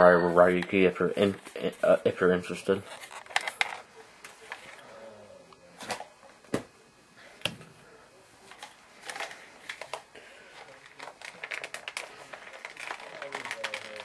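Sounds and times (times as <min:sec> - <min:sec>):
plastic toys clicking and rustling: 0:02.9 - 0:04.8, 0:08.5 - 0:14.0.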